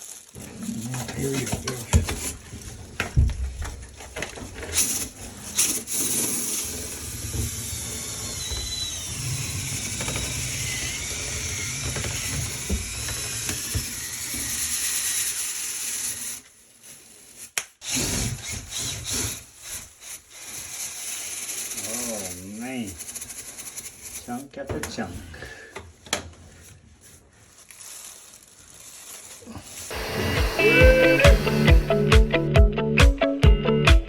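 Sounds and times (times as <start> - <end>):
brush scraping inside duct: 0.0 - 32.5
power drill whirring: 4.1 - 16.6, 17.2 - 24.4, 29.2 - 32.5.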